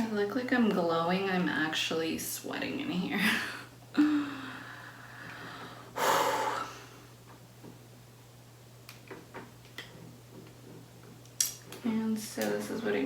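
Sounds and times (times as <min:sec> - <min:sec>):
steady low hum: 0:00.0 - 0:13.0
woman breathing out: 0:03.4 - 0:07.1.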